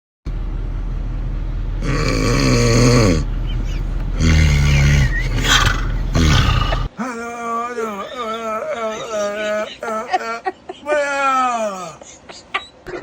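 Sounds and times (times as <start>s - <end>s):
steady low hum: 0.3s - 6.9s
loud snoring: 1.8s - 6.9s.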